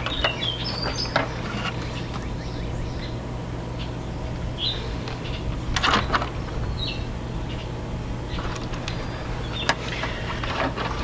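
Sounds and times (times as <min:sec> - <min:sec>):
bird chirps: 0:00.0 - 0:10.3
steady low hum: 0:00.0 - 0:11.0.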